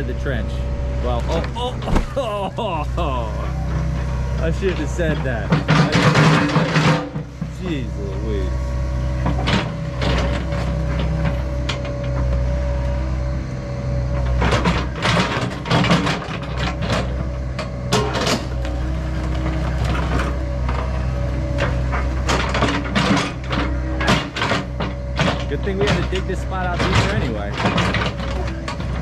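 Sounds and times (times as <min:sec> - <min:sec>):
steady whine: 0:00.0 - 0:09.2
excavator diesel engine running: 0:00.0 - 0:29.0
machine clanks and knocks: 0:04.6 - 0:07.5, 0:21.6 - 0:29.0.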